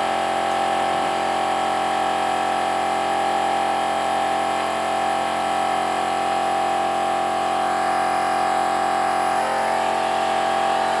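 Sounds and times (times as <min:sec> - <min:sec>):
electric power tool motor whine: 0:00.0 - 0:11.0.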